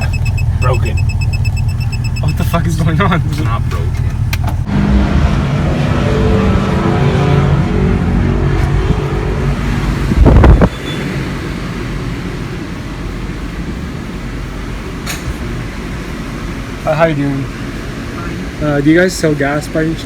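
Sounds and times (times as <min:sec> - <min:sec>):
car engine and road noise: 0:00.0 - 0:20.0.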